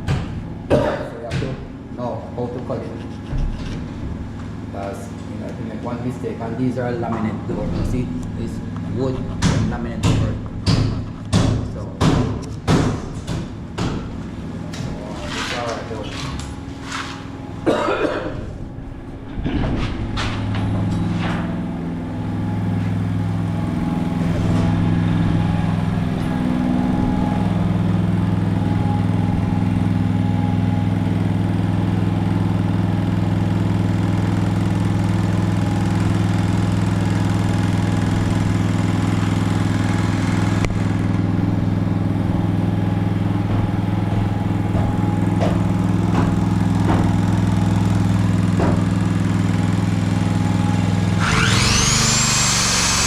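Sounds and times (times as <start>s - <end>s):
knocks: 9.4s - 14.1s, 43.4s - 47.3s, 48.6s - 48.9s
small engine humming: 14.3s - 53.0s.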